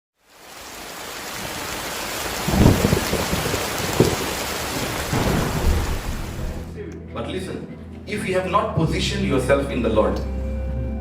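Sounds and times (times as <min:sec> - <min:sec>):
heavy rain: 0:00.2 - 0:06.7
low thunder rumbles: 0:02.2 - 0:06.7.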